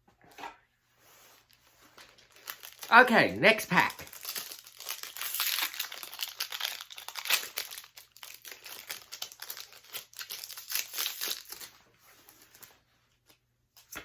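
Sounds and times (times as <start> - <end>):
foil wrapper crinkling and tearing: 1.4 - 11.8.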